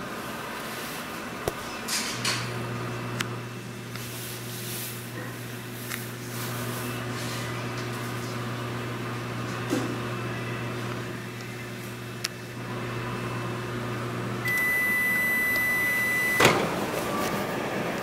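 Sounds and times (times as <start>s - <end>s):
microwave oven humming: 0.0s - 18.0s
microwave oven clicks: 14.4s - 17.1s.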